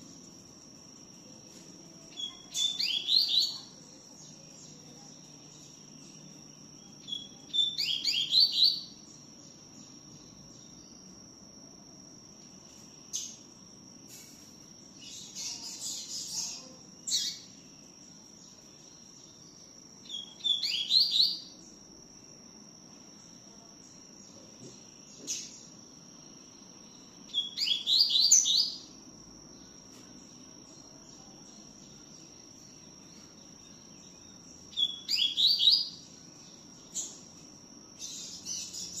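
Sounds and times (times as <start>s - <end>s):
bird chirps and chatter: 2.1s - 5.8s, 15.0s - 17.6s.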